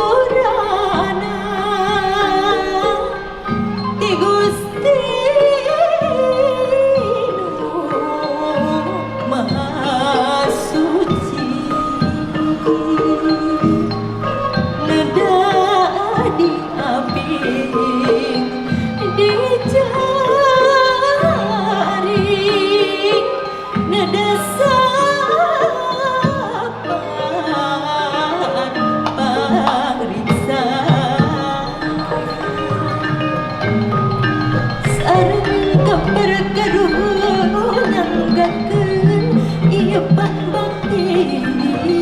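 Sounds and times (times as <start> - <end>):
low gong tones: 0.0 - 7.8, 29.0 - 42.0
bronze metallophones melody: 0.0 - 42.0.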